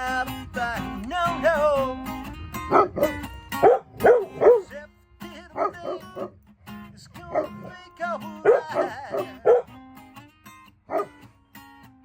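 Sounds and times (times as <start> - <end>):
acoustic guitar playing: 0.0 - 12.0
puppies yipping and barking: 2.6 - 4.7, 8.4 - 9.7, 10.9 - 11.2.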